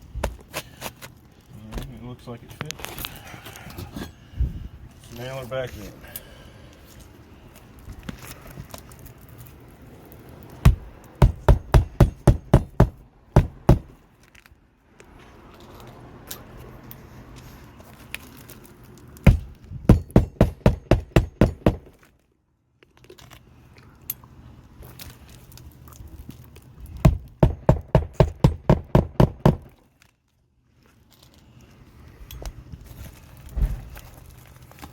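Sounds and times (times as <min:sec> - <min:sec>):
hammer blows on nails: 0:10.6 - 0:14.0, 0:19.2 - 0:22.0, 0:27.0 - 0:29.8.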